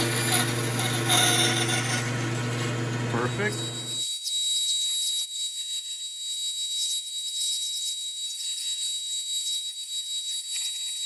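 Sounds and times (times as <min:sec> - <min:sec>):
power saw whining: 0:00.0 - 0:04.0.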